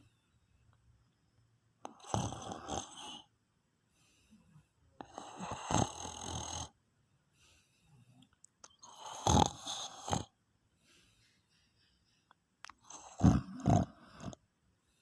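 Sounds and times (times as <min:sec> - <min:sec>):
man snoring: 0:01.9 - 0:03.3, 0:05.0 - 0:06.8, 0:08.8 - 0:10.3, 0:12.8 - 0:14.4.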